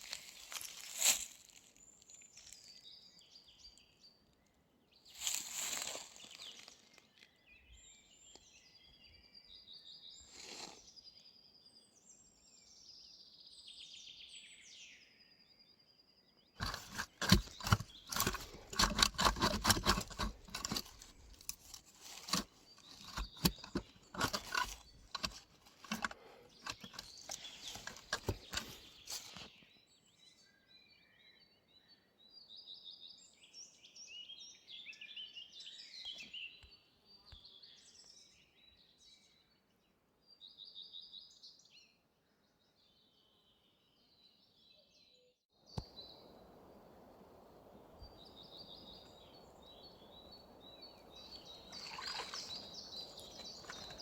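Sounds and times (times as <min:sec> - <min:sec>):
dry material crunching: 0:00.0 - 0:02.7, 0:05.2 - 0:07.0, 0:16.6 - 0:29.5
songbirds chirping: 0:00.0 - 0:54.0.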